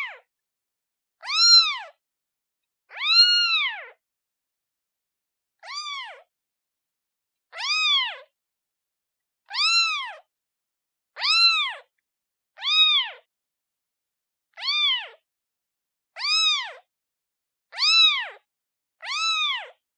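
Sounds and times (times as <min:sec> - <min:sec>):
kitten meowing: 0:00.0 - 0:00.3, 0:01.2 - 0:02.0, 0:02.9 - 0:04.0, 0:05.6 - 0:06.3, 0:07.5 - 0:08.3, 0:09.5 - 0:10.3, 0:11.2 - 0:11.9, 0:12.6 - 0:13.3, 0:14.5 - 0:15.2, 0:16.2 - 0:16.9, 0:17.7 - 0:18.4, 0:19.0 - 0:19.8.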